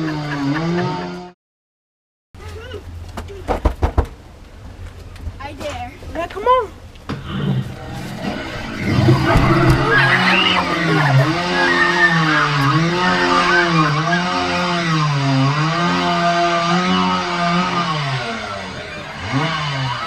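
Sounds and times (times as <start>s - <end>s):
chainsaw engine revving: 0.0s - 1.4s, 7.3s - 20.0s.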